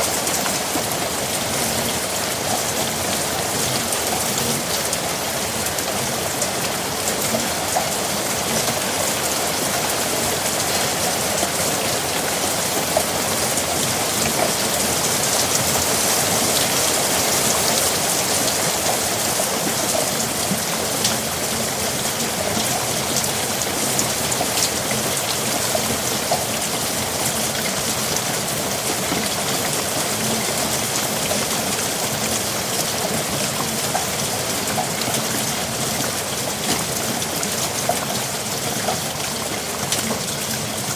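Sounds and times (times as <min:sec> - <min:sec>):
steady rain hiss: 0:00.0 - 0:40.9.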